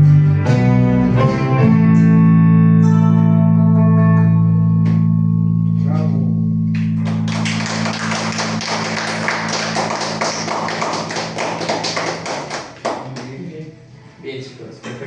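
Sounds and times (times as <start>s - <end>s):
audience applauding: 6.8s - 13.4s.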